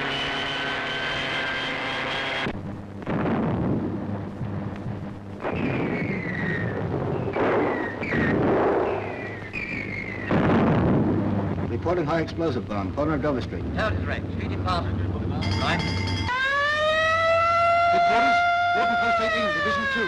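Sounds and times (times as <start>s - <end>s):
explosions: 2.4s - 12.2s
bombs falling whistles: 5.4s - 10.9s
aircraft engines droning: 11.0s - 20.0s.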